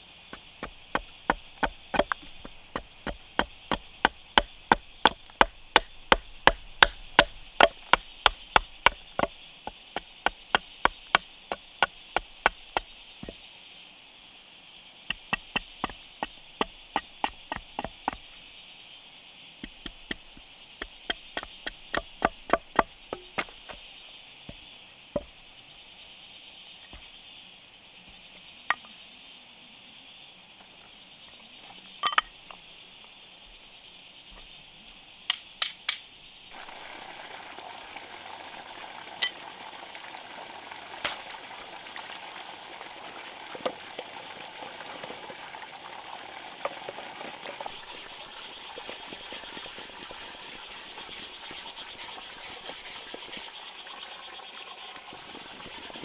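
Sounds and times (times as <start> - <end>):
high insect drone: 0.0 - 56.0.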